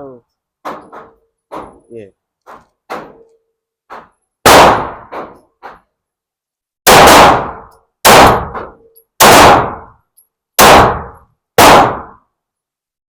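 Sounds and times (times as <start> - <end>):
pistol shots: 2.5 - 3.2, 3.9 - 5.8, 6.8 - 10.0, 10.6 - 12.2.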